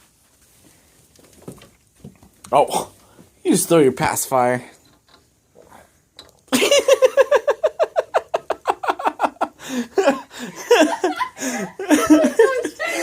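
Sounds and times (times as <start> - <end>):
high-pitched laughter: 6.5 - 13.0.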